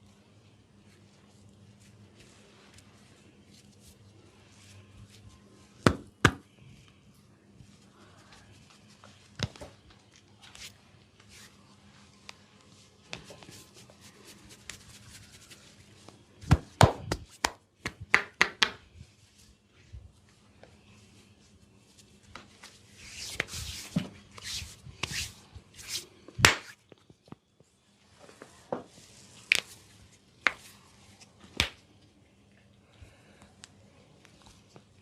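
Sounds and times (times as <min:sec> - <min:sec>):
hands slapping body: 0:05.9 - 0:06.4, 0:16.4 - 0:18.8, 0:23.3 - 0:26.8, 0:31.6 - 0:31.8.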